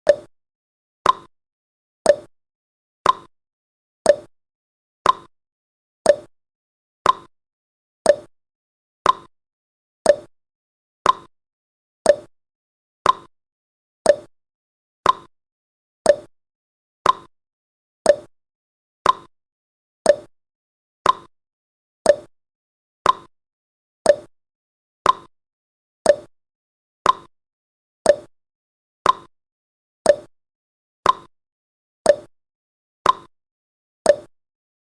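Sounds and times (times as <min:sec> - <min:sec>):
clock ticking: 0:02.1 - 0:02.3, 0:04.1 - 0:04.3, 0:06.1 - 0:06.3, 0:08.1 - 0:08.3, 0:09.0 - 0:09.3, 0:10.1 - 0:10.3, 0:11.0 - 0:11.3, 0:12.1 - 0:12.3, 0:13.0 - 0:13.3, 0:14.1 - 0:14.3, 0:15.0 - 0:15.3, 0:16.1 - 0:16.3, 0:17.0 - 0:17.3, 0:18.1 - 0:18.3, 0:20.1 - 0:20.3, 0:21.0 - 0:21.3, 0:22.1 - 0:22.3, 0:23.0 - 0:23.3, 0:24.1 - 0:24.3, 0:26.1 - 0:26.3, 0:27.0 - 0:27.3, 0:28.1 - 0:28.3, 0:29.0 - 0:29.3, 0:30.1 - 0:30.3, 0:31.0 - 0:31.3, 0:32.1 - 0:32.3, 0:33.0 - 0:33.3, 0:34.1 - 0:34.3.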